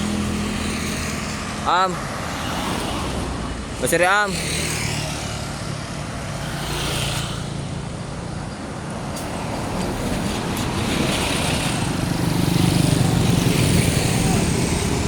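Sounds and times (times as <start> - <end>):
vehicle engine and tyre noise: 0.0 - 15.0.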